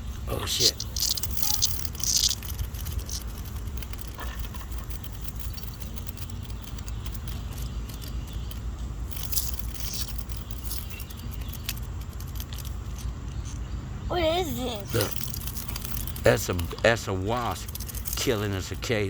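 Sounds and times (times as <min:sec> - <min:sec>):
cicada distress buzz: 0:00.0 - 0:13.7
faint crackling and scraping: 0:00.0 - 0:19.0
steady low rumble: 0:00.0 - 0:19.0.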